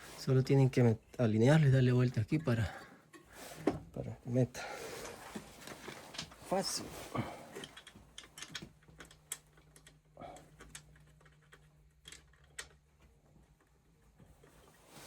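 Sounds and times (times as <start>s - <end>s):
clicks and taps of metal parts: 7.6s - 13.7s.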